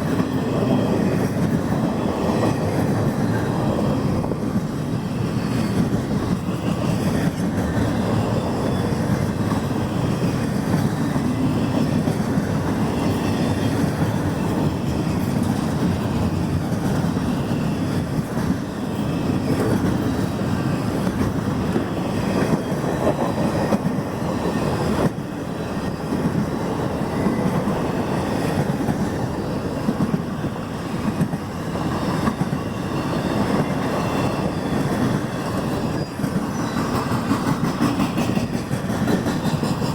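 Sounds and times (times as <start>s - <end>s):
rumble of train wheels on rail: 0.0s - 39.9s
clacking over rail joints: 27.2s - 39.9s.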